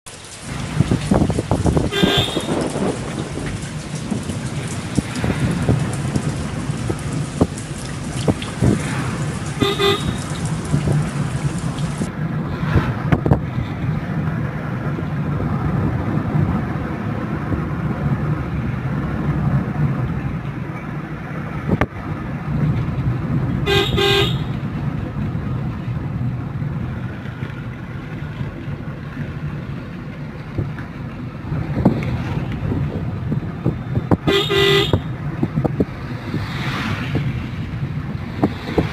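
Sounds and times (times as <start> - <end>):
low road rumble: 0.0 - 38.9
vehicle horn blasts: 1.9 - 2.6, 9.6 - 10.3, 23.6 - 24.6, 34.2 - 35.1.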